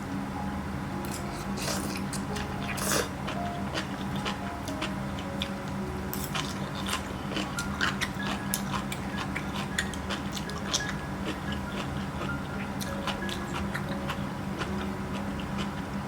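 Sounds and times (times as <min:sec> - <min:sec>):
faint background music: 0:00.0 - 0:16.0
chewing and crunching food: 0:01.1 - 0:16.0.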